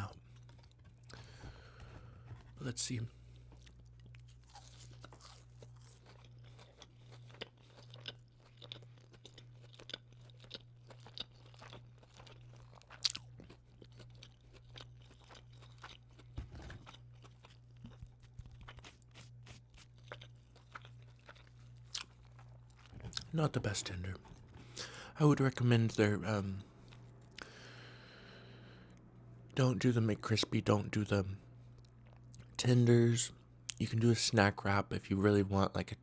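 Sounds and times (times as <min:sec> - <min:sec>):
low electrical hum: 0:00.0 - 0:36.0
chewing crunches: 0:03.2 - 0:23.4.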